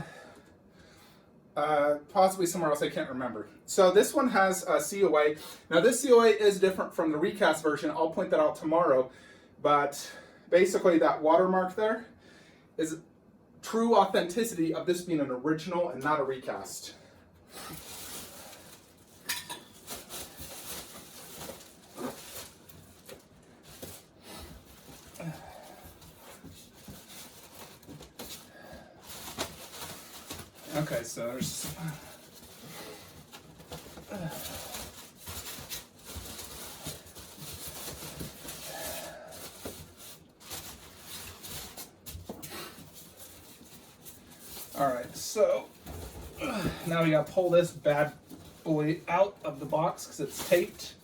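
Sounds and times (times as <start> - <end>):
packaging knocks and scrapes: 17.5 - 47.4
brief grunt: 46.3 - 46.9.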